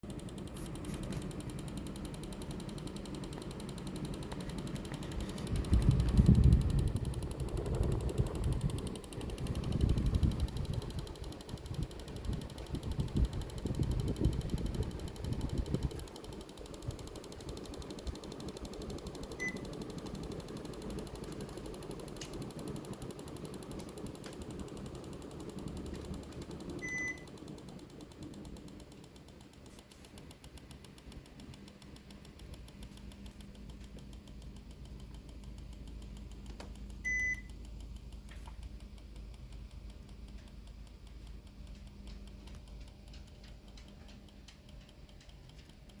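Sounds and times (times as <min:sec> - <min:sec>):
air conditioner fan ticking and rattling: 0:00.0 - 0:46.0
short electronic beeps: 0:37.1 - 0:37.5.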